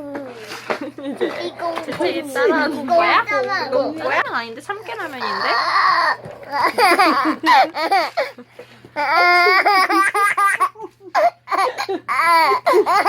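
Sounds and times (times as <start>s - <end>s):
baby giggling: 6.0s - 8.4s, 9.0s - 13.0s.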